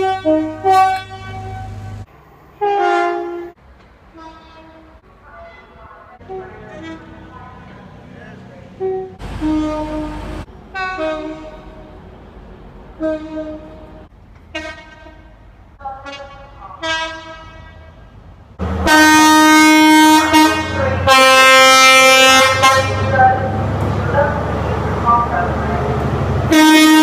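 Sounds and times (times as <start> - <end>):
train horn: 0.0 - 2.0, 2.6 - 7.5, 8.8 - 11.9, 13.0 - 18.0, 18.7 - 23.5, 26.5 - 27.0.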